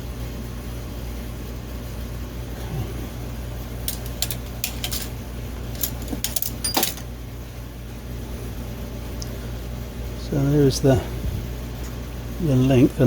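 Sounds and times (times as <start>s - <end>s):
low machine hum: 0.0s - 13.0s
metallic clinks of tools: 3.9s - 5.1s, 5.8s - 7.0s.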